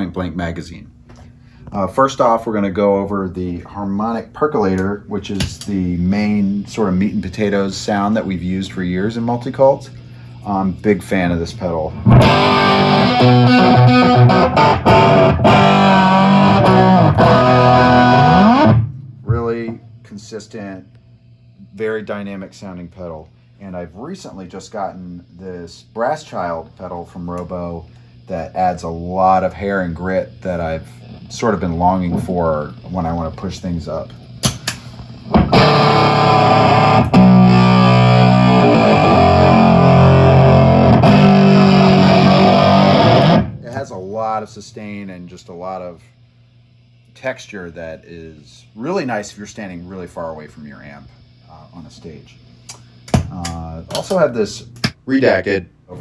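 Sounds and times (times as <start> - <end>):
distorted electric guitar chords: 11.6 - 20.2, 35.2 - 43.8.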